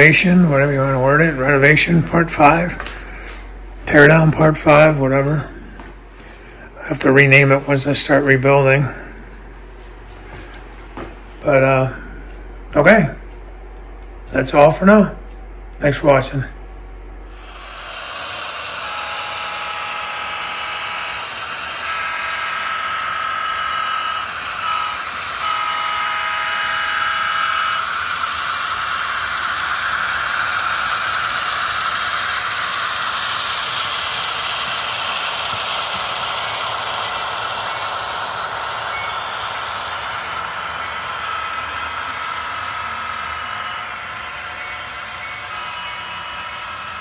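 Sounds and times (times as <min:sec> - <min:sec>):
train passing: 0:00.0 - 0:13.1, 0:15.9 - 0:47.0
train horn: 0:23.5 - 0:28.0.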